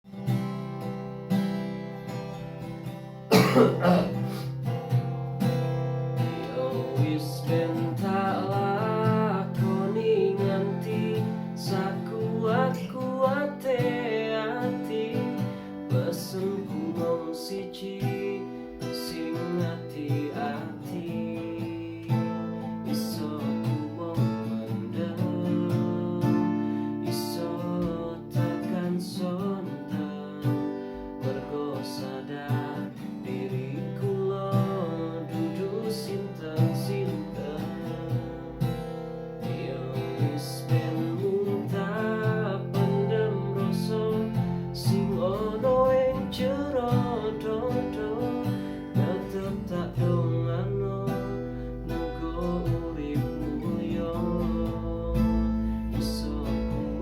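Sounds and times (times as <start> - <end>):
strummed acoustic guitar music: 0.0 - 57.0.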